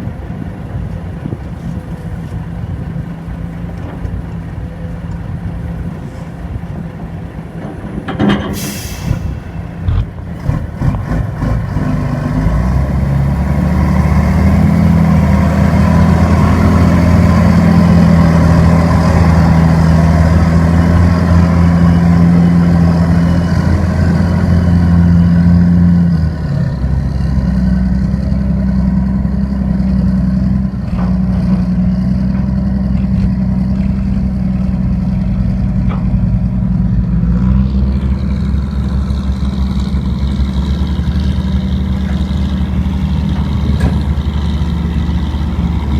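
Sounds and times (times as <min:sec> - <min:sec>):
diesel engine drone: 0:00.0 - 0:45.9
sharp hiss: 0:08.5 - 0:09.6.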